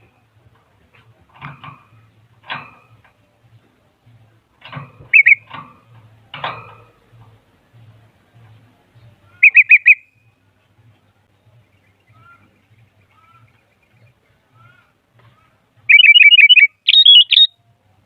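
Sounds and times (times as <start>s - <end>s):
songbird chattering and whistling: 5.1s - 5.5s, 9.3s - 10.2s, 15.9s - 17.6s.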